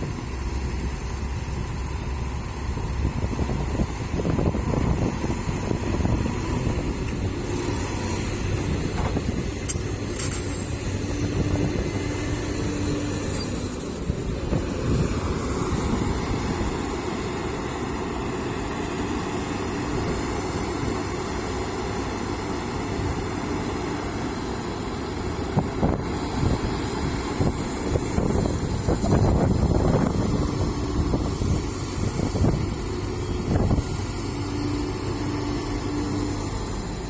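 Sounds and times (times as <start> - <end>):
heavy machinery diesel engine: 0.0 - 37.0.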